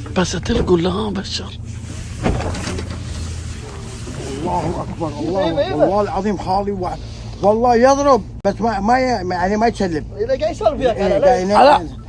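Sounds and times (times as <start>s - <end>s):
boat engine humming: 0.0s - 12.0s
faint voices: 2.2s - 8.0s.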